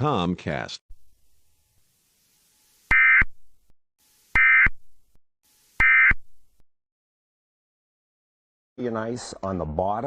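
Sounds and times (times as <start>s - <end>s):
digital data tone bursts: 2.4s - 3.3s, 4.0s - 4.8s, 5.4s - 6.2s.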